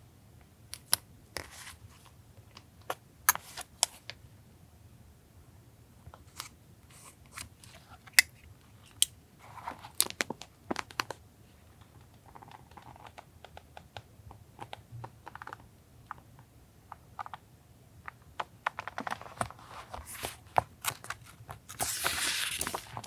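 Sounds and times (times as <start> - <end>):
paper crinkling and rustling: 18.4 - 23.0.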